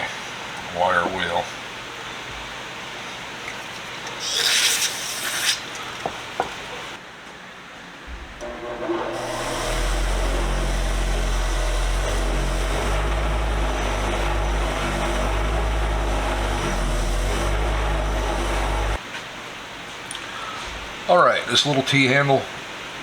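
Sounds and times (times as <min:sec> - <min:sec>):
wire wheel motor hum: 0:08.3 - 0:19.0
wire wheel brushing metal: 0:08.4 - 0:19.0.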